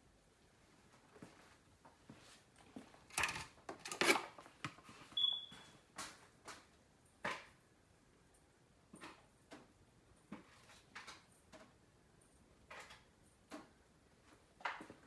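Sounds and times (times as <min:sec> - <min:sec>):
kitchen rustles and knocks: 0:02.0 - 0:05.2.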